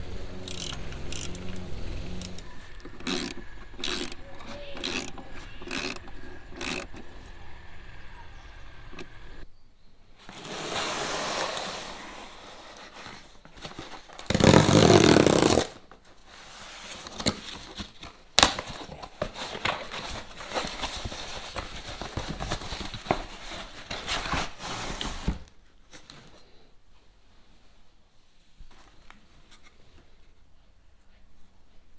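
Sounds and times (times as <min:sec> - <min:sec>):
loud scraping rush: 0:00.0 - 0:09.4
wrenches clicking and knocking: 0:00.0 - 0:09.4
packaging rustling: 0:00.1 - 0:09.4, 0:11.8 - 0:26.3.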